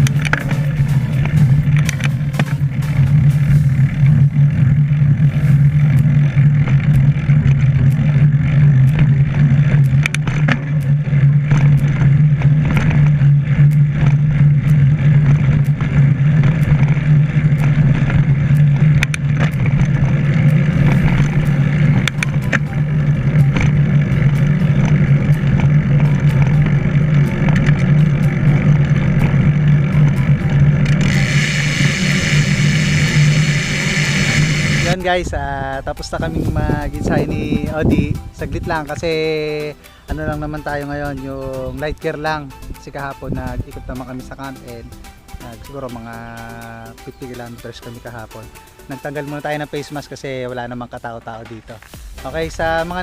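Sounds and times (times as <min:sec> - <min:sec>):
scattered clicks: 0:00.0 - 0:35.0
wind buffeting microphone: 0:00.0 - 0:45.4
tyre and road noise: 0:00.0 - 0:53.0
high hiss: 0:31.1 - 0:35.0.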